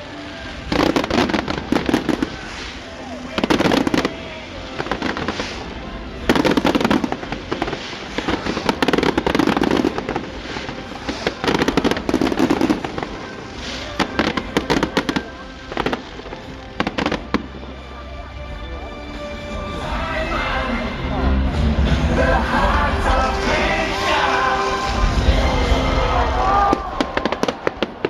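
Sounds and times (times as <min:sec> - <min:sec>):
fireworks bangs: 0:00.0 - 0:17.5, 0:23.4 - 0:28.0
fireworks crackling: 0:00.0 - 0:28.0.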